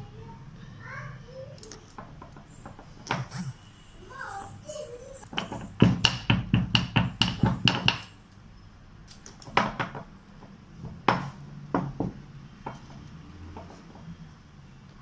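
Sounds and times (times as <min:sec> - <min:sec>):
pestle pounding in mortar: 0:05.3 - 0:08.1, 0:10.8 - 0:12.9.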